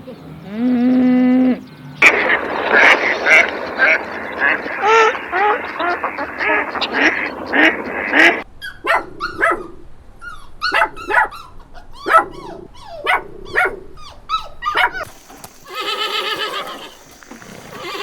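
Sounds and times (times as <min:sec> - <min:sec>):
dog barking: 0:08.6 - 0:15.1
horse whinnying: 0:15.7 - 0:18.0.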